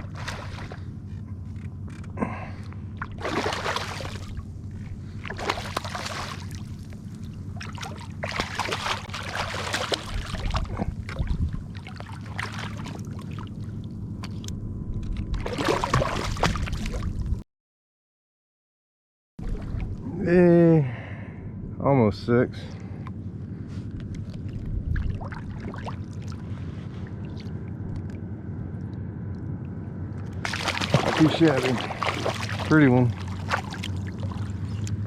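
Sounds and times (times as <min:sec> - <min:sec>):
water splashing and sloshing: 0:00.0 - 0:17.4, 0:19.4 - 0:20.2, 0:22.8 - 0:35.0
wind rumble on microphone: 0:09.9 - 0:17.4, 0:23.2 - 0:30.4.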